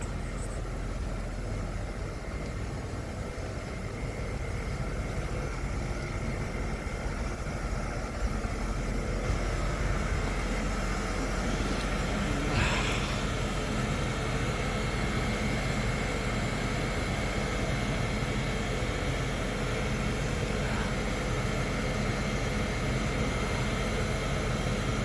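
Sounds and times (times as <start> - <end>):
high whine: 0.0 - 18.8
electric locomotive humming: 0.0 - 25.0.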